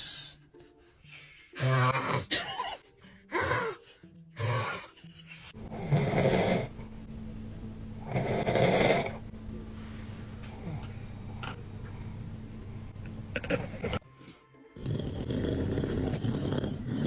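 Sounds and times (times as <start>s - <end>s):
person snoring loudly: 1.6s - 2.4s, 5.6s - 6.8s, 8.0s - 9.2s, 14.8s - 17.0s.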